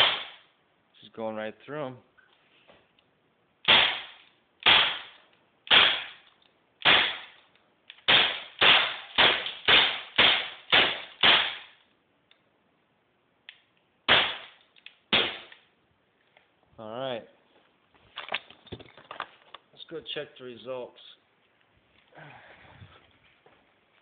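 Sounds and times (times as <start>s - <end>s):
air pistol shots: 0.0s - 0.4s, 3.6s - 7.4s, 8.0s - 11.8s, 14.1s - 15.7s.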